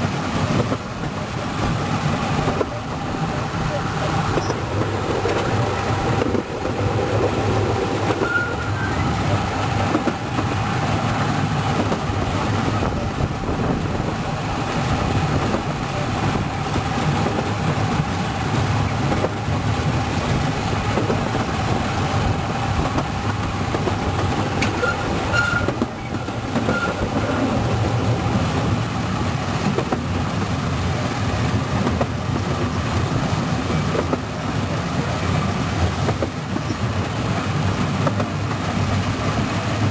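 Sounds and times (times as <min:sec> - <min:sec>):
train wheels and motor rumbling: 0:00.0 - 0:39.9
high squeaks: 0:08.1 - 0:09.2, 0:24.7 - 0:27.4.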